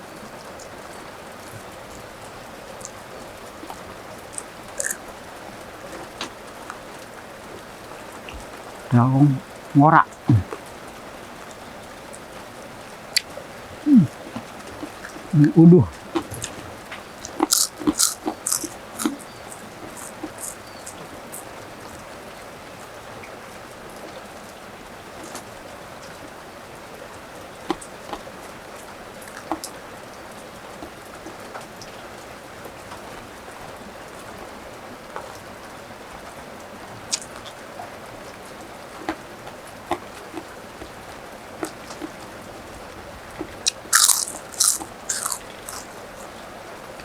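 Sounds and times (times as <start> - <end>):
steady rain hiss: 0.0 - 47.0
people biting crunchy food: 3.7 - 5.0, 9.0 - 10.6, 13.9 - 16.6, 17.2 - 21.4, 43.6 - 45.9.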